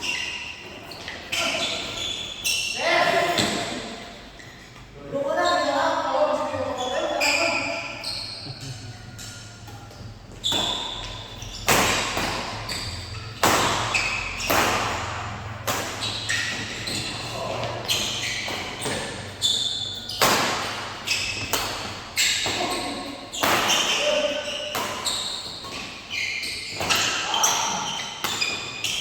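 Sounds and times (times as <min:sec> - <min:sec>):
high shoe squeaks: 0:00.0 - 0:29.0
racket hitting shuttlecock: 0:09.2 - 0:29.0.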